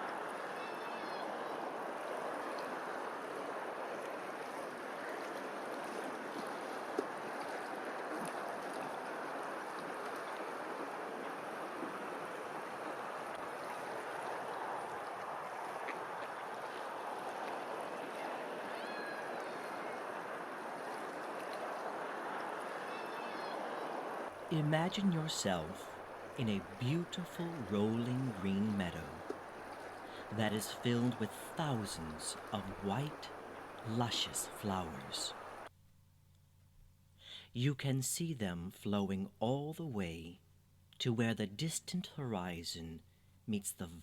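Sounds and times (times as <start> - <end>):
running water: 0.0 - 35.7.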